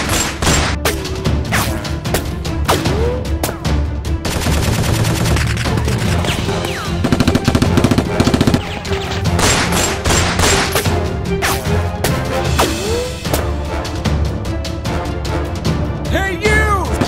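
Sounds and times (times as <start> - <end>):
backing music: 0.0 - 17.0
automatic gunfire: 4.2 - 6.0, 6.8 - 10.7
loud gun blasts: 6.2 - 10.9.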